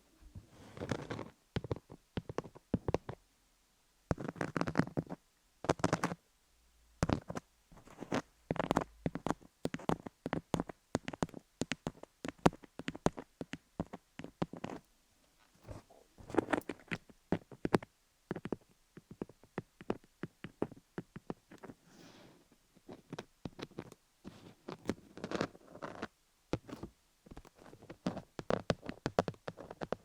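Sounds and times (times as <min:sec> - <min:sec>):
scratchy rustles: 0:00.3 - 0:03.2, 0:07.0 - 0:13.2, 0:13.8 - 0:17.6, 0:20.6 - 0:30.0.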